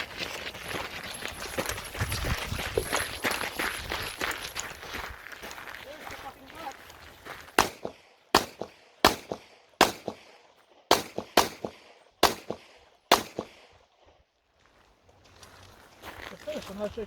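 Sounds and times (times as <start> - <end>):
pistol shots: 7.6 - 13.8.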